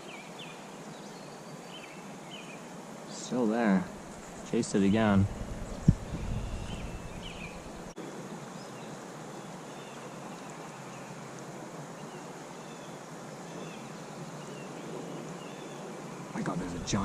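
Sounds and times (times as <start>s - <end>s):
creek water flowing: 2.0s - 17.0s
faint bird chirps: 5.4s - 7.9s.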